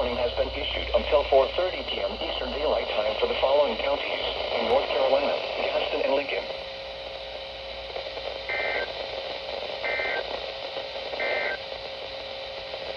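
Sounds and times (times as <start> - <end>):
radio static hiss: 0.0 - 12.9
short data tone bursts: 11.2 - 11.6.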